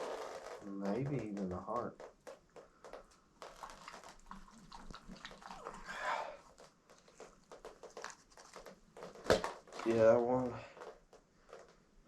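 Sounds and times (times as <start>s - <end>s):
wet squelching: 2.2s - 9.9s.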